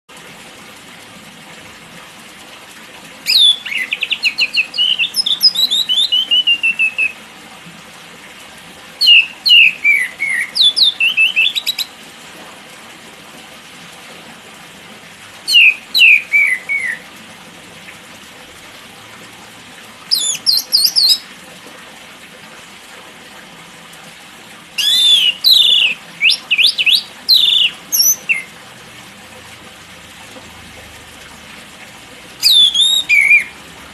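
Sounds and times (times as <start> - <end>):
bird singing whistled notes: 3.3 - 7.2, 9.0 - 11.9, 15.5 - 17.0, 20.1 - 21.2, 24.8 - 28.5, 32.4 - 33.5.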